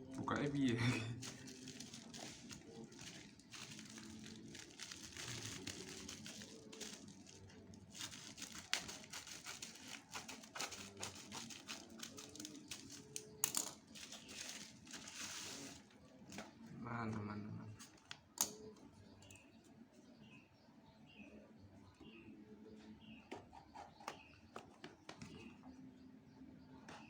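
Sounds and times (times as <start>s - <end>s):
loud packaging crackle: 1.2s - 16.4s
packaging crinkling and rustling: 1.2s - 16.5s.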